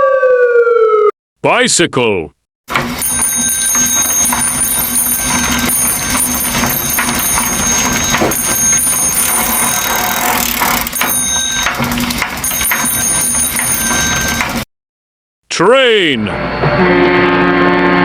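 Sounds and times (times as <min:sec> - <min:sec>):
bicycle riding noise: 0:02.7 - 0:14.6
bicycle bell ringing: 0:02.9 - 0:14.6.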